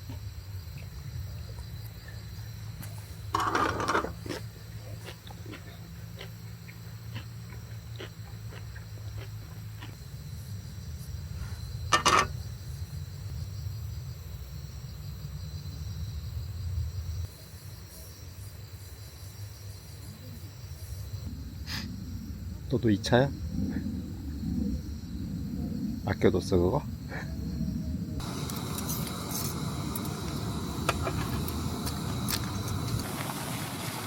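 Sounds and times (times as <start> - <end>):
campfire crackling: 28.2 - 34.0
sharp fire crack: 28.2 - 34.0.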